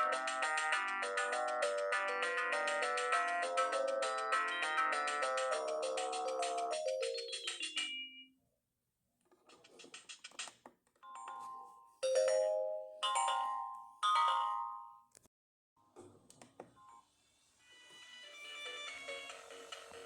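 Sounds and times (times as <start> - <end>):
phone ringtone melody: 0.2 - 8.3, 11.0 - 15.1
loud ringtone chimes: 0.9 - 8.3, 11.1 - 15.1.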